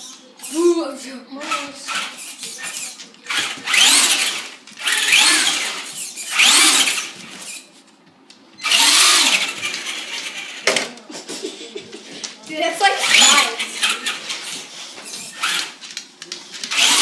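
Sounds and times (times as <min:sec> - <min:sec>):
rc car motor revving: 0:01.4 - 0:07.7, 0:08.6 - 0:10.6, 0:13.0 - 0:14.6, 0:15.2 - 0:15.8, 0:16.7 - 0:17.0.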